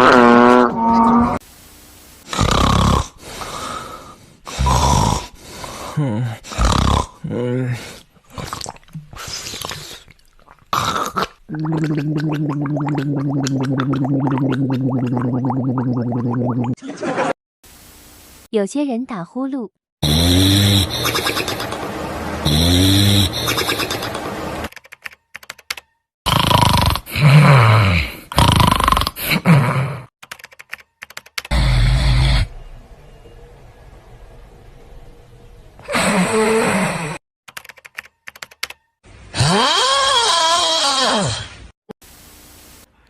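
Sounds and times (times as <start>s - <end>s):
person snoring: 2.3s - 8.6s, 20.0s - 21.5s, 22.5s - 23.9s, 26.3s - 30.1s.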